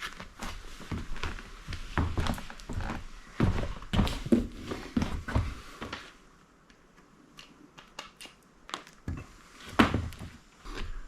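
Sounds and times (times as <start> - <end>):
footsteps on hard floor: 0.0 - 6.2, 9.1 - 11.0.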